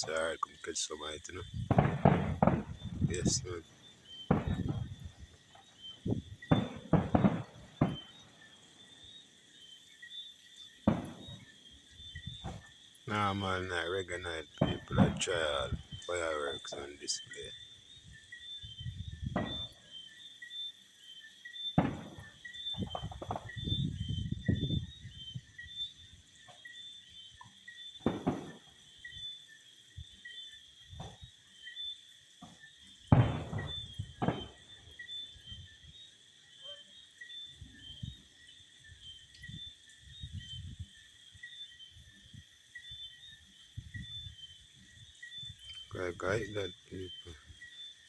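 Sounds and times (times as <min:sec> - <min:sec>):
distant fireworks bangs: 0:00.0 - 0:09.3, 0:10.7 - 0:18.0, 0:18.6 - 0:20.0, 0:21.8 - 0:26.6, 0:28.0 - 0:29.3, 0:30.9 - 0:31.3, 0:32.4 - 0:36.0, 0:45.5 - 0:47.6
night insects chirping: 0:00.0 - 0:48.0.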